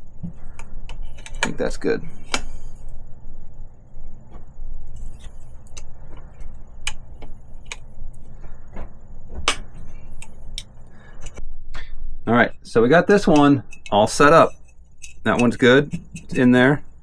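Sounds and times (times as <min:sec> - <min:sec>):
steady low hum: 0:00.0 - 0:17.0
metal hand tools clinking: 0:13.2 - 0:16.7.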